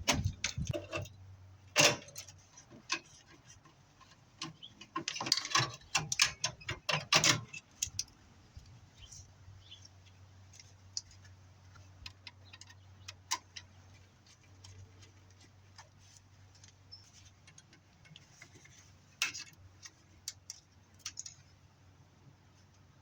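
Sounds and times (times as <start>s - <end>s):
metal clicks and clatters: 0.0s - 8.2s, 12.0s - 16.0s, 17.4s - 21.5s.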